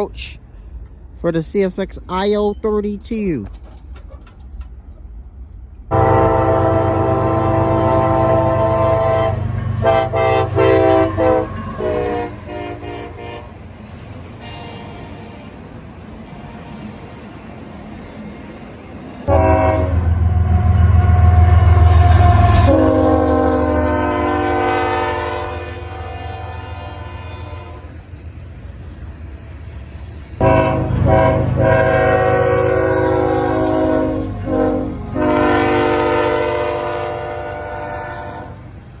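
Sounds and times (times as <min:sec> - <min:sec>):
locomotive air horn blasts: 0:05.9 - 0:13.6, 0:19.3 - 0:28.0, 0:30.4 - 0:38.6.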